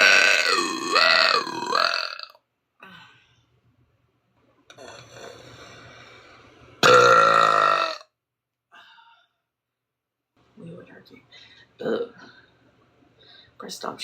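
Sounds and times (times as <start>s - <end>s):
woman burping: 0.0s - 2.4s, 6.8s - 8.1s, 11.8s - 12.2s.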